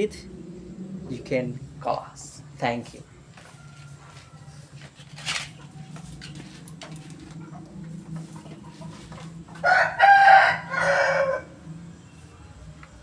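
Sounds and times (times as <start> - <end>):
faint low hum: 0.0 - 13.0
rooster crowing: 3.1 - 12.2.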